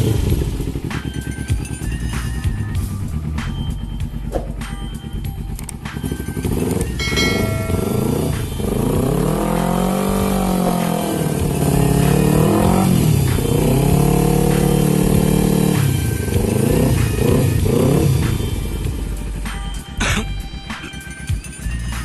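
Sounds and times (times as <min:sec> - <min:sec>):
motorcycle engine revving: 0:03.1 - 0:19.6.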